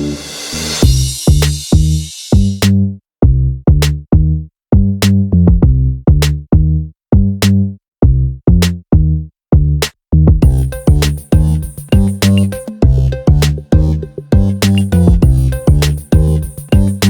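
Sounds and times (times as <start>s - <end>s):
electronic music with drum machine: 0.0s - 2.6s, 10.4s - 17.0s.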